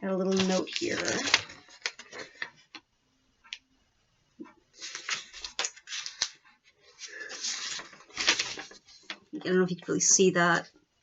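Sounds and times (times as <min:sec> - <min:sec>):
paper rustling and crinkling: 0:00.2 - 0:02.8, 0:04.8 - 0:09.5.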